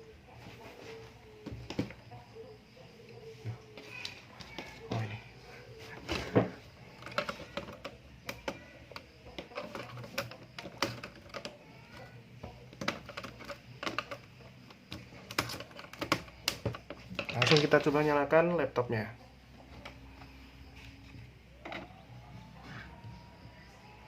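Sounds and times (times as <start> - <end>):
plastic laptop parts clicking: 6.9 - 17.9.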